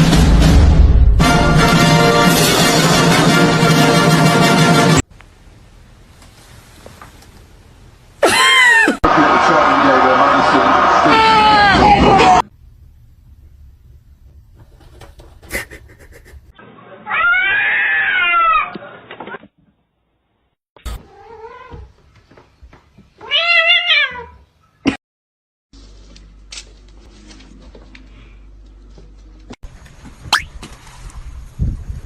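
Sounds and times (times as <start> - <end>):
cat meowing: 17.1 - 18.7, 23.2 - 24.4.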